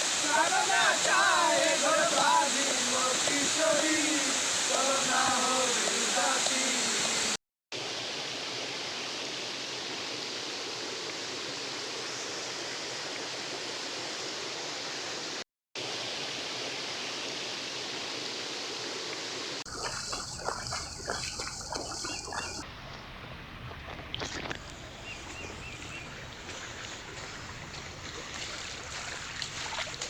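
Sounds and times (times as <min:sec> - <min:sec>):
waterfall rushing: 0:00.0 - 0:07.4.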